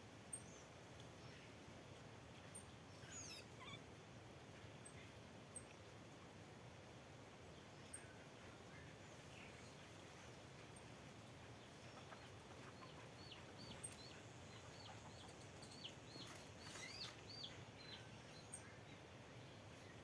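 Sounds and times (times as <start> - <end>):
outdoor background noise: 0.0 - 20.0
faint bird chirps: 2.5 - 3.8, 11.7 - 19.0.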